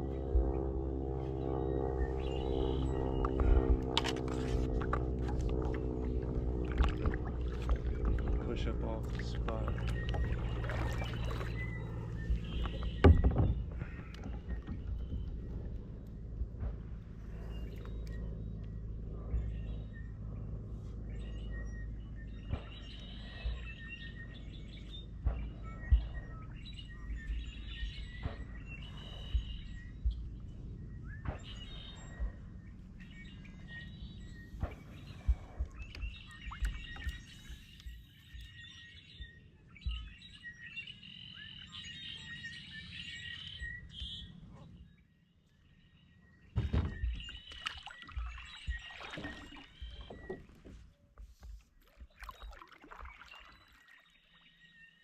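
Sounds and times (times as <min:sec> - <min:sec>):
low rumble: 0:00.0 - 0:44.9
small birds chirping: 0:01.6 - 0:55.0
sharp knocks and clicks: 0:12.3 - 0:17.0.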